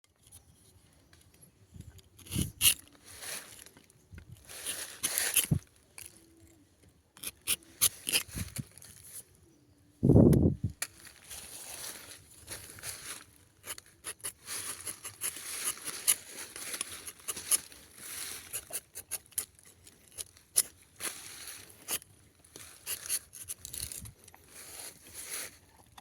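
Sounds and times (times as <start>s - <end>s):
knife scraping bark: 2.1s - 3.6s, 4.4s - 6.2s, 7.2s - 9.2s, 13.6s - 26.0s.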